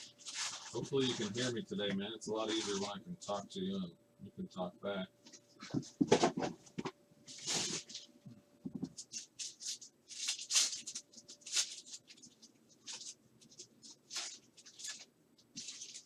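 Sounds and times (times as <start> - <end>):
wrappers crinkling and tearing: 0.0 - 1.6, 2.4 - 2.9, 7.3 - 8.1, 9.0 - 16.0
cards being handled: 2.5 - 2.9, 8.7 - 16.0.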